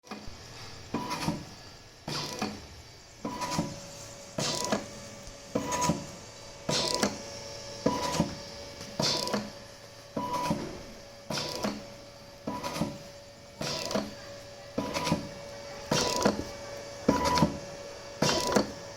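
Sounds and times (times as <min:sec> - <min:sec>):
ventilator motor whine and clicks: 0:00.0 - 0:18.9.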